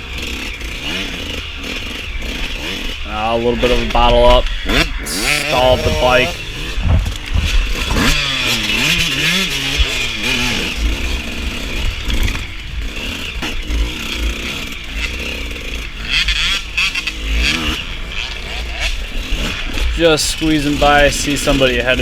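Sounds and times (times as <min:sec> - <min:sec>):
dirt bike engine revving: 0:00.0 - 0:22.0.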